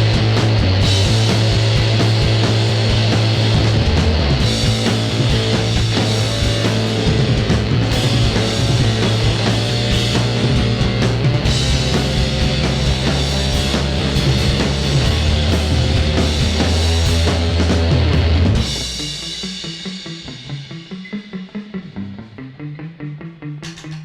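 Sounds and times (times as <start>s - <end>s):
long held low bass notes: 0.0s - 19.1s
steady drum hits: 0.0s - 19.4s
rock band playing live: 0.0s - 24.0s.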